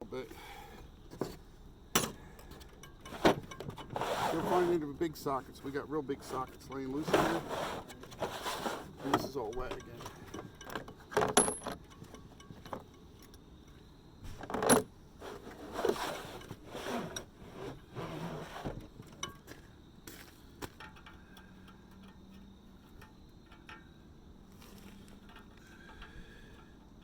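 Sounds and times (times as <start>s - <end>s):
metal tools clinking and rattling: 2.0s - 4.8s, 5.5s - 13.4s, 19.0s - 19.6s, 20.7s - 23.8s.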